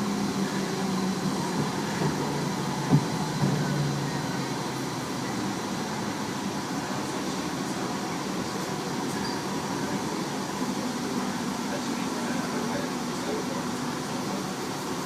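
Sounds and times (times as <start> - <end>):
electric train running: 0.0 - 15.0.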